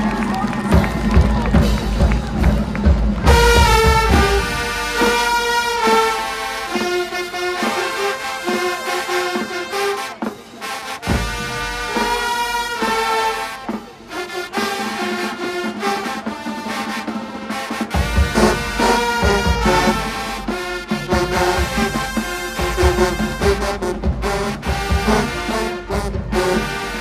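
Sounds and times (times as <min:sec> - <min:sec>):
marching band brass playing: 0:00.0 - 0:27.0.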